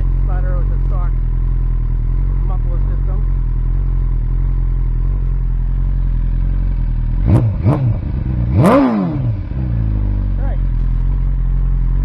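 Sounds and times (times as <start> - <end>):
motorcycle engine idling: 0.0 - 12.0
engine revving: 4.9 - 11.2.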